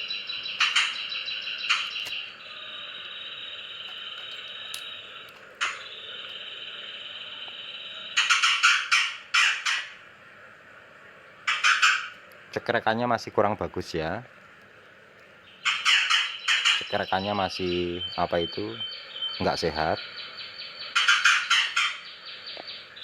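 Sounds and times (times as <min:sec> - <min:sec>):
songbird rasping chatter call: 0:00.0 - 0:07.4, 0:15.5 - 0:23.0.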